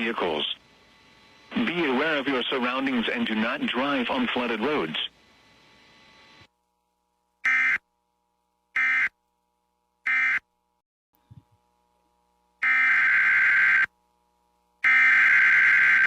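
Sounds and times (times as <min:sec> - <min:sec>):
harsh electronic data bursts: 0:07.5 - 0:07.8, 0:12.6 - 0:13.9, 0:14.8 - 0:16.0.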